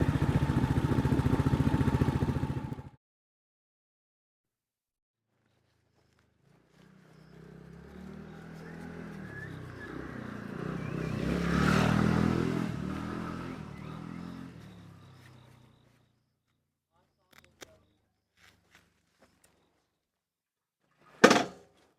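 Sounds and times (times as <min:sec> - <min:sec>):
motorcycle engine passing: 0:00.0 - 0:03.0, 0:06.4 - 0:16.2.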